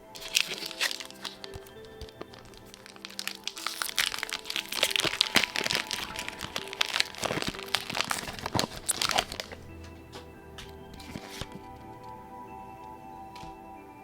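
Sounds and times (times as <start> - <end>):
foil wrappers crinkling: 0.0 - 12.0
background music: 0.0 - 14.0.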